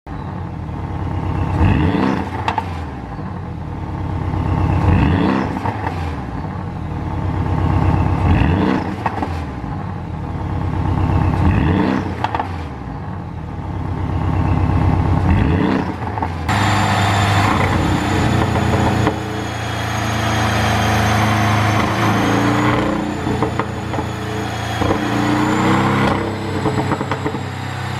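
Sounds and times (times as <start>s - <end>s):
car engine revving: 15.2s - 27.9s.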